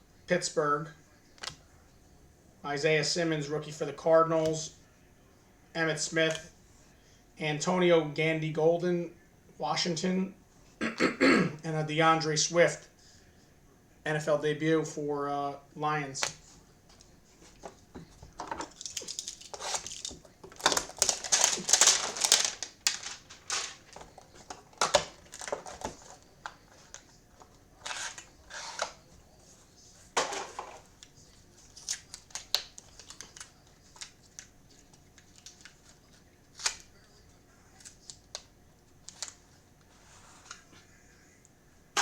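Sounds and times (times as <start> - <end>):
cards rustling and clicking: 16.2 - 40.9
card pack wrapping tearing: 18.6 - 27.0, 27.8 - 29.0.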